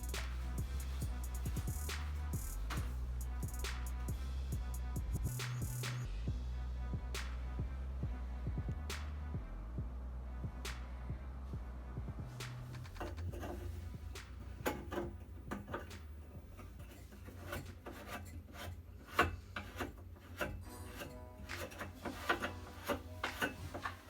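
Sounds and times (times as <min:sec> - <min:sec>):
steady low hum: 0:00.0 - 0:20.0
plastic pipe scraping and clicking: 0:12.3 - 0:24.0.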